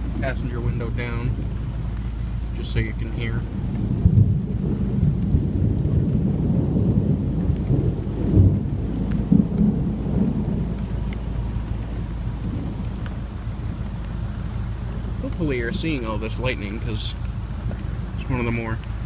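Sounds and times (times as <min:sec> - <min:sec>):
rain falling: 0:00.0 - 0:19.0
thunder rumbling: 0:00.0 - 0:19.0.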